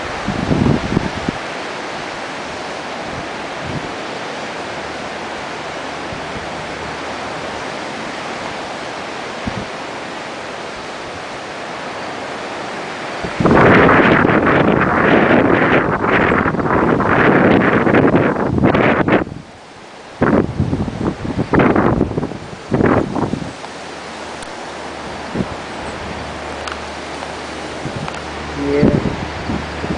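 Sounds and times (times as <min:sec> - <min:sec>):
surf: 0:00.0 - 0:29.9
wind: 0:00.0 - 0:29.9
wind buffeting microphone: 0:00.0 - 0:29.9.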